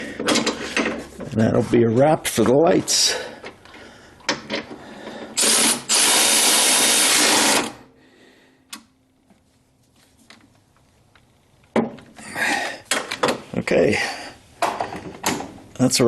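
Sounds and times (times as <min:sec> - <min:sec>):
power tool running: 0:05.4 - 0:07.8.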